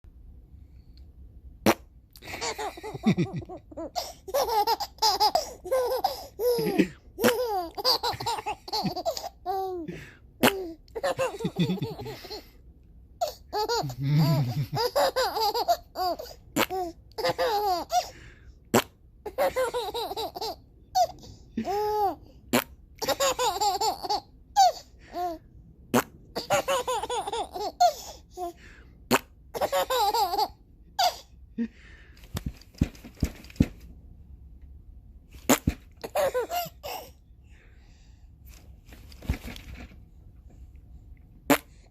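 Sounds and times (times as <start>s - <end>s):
fart sounds: 1.6s - 1.9s
baby laughing hard: 2.2s - 12.5s, 13.2s - 18.1s, 19.3s - 22.2s, 23.0s - 25.4s, 26.4s - 28.6s, 29.5s - 31.3s, 35.5s - 37.2s.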